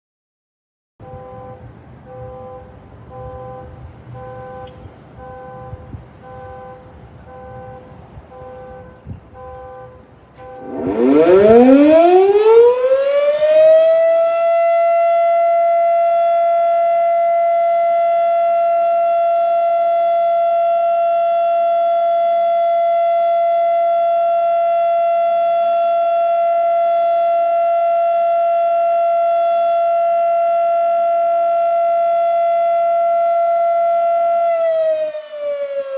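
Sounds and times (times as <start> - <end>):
fire siren winding up: 10.4 - 35.9.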